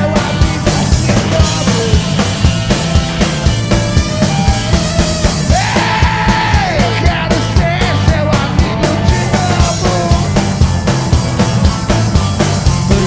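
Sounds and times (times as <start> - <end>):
driving drum beat: 0.0 - 13.0
rock band playing live: 0.0 - 13.0.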